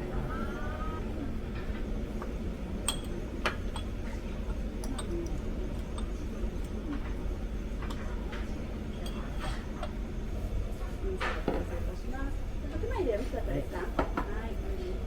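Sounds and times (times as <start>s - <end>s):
light clicks and clinks: 4.8s - 7.1s.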